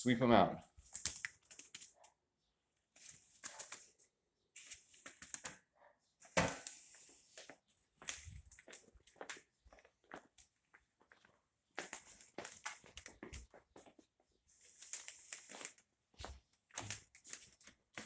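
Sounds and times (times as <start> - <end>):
broom sweeping: 6.2 - 7.5.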